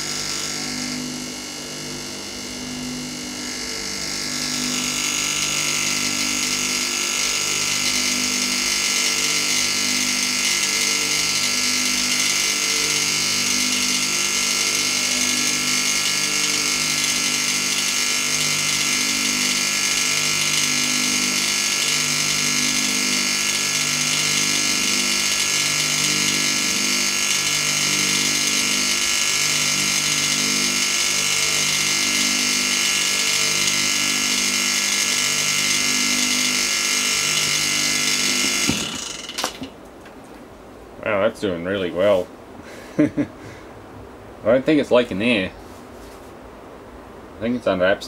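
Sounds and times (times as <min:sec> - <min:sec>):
compressor stopping clicks: 0:00.0 - 0:40.2
compressor pulsing hum: 0:00.0 - 0:48.0.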